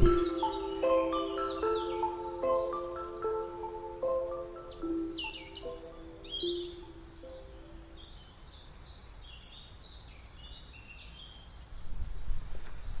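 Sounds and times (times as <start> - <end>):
wind buffeting microphone: 0.0 - 2.7, 11.7 - 13.0
soft background music: 0.0 - 8.4
small birds chirping: 0.0 - 13.0.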